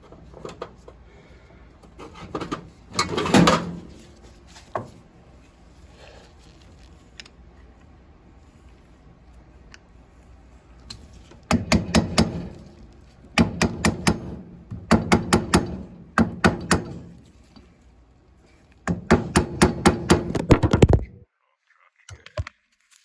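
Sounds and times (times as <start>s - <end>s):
hard knocks: 11.5s - 12.6s, 13.4s - 17.2s, 18.9s - 21.1s.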